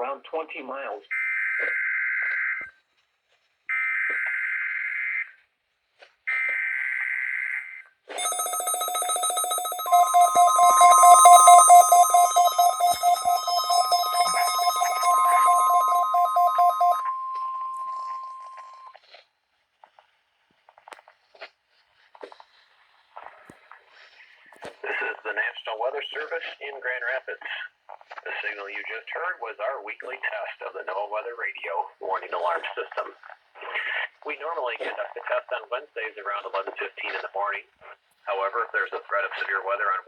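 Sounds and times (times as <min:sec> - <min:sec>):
raspy digital data bursts: 0:08.2 - 0:18.6
rapid electronic ringing alarm: 0:08.2 - 0:18.9
steady warning alarm tone: 0:08.2 - 0:18.9.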